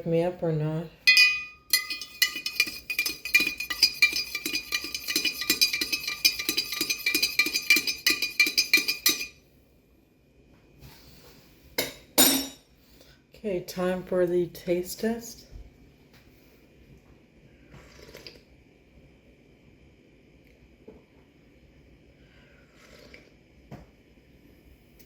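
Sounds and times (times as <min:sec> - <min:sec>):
spoon knocking on mug rim: 0:01.1 - 0:09.3
spoon stirring in ceramic mug: 0:01.1 - 0:09.3.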